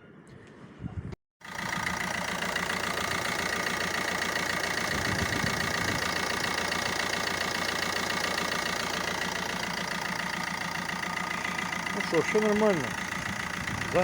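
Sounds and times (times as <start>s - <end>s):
diesel engine idling: 1.4s - 14.0s.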